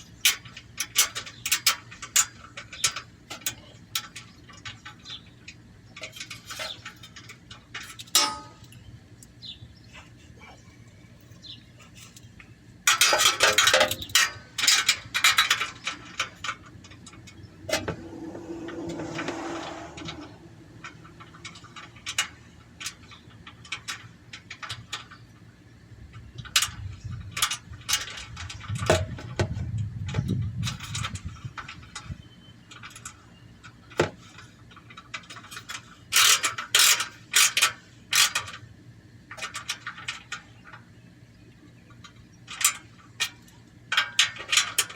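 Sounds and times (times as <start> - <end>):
metal scraping: 17.0 - 22.2.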